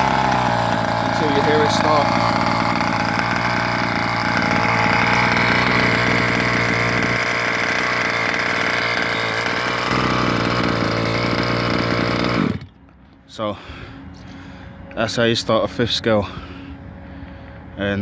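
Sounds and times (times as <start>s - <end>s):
small two-stroke engine running: 0.0s - 12.9s.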